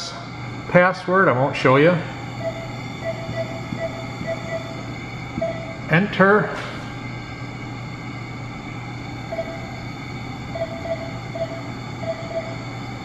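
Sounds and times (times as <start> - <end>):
medical equipment hum: 0.0 - 13.0
short electronic beeps: 2.4 - 5.8, 10.5 - 12.6.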